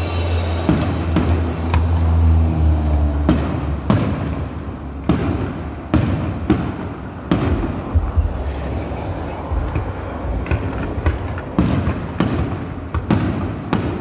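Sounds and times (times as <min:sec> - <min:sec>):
low rumble: 0:00.0 - 0:05.1
distant fireworks bangs: 0:00.0 - 0:14.0.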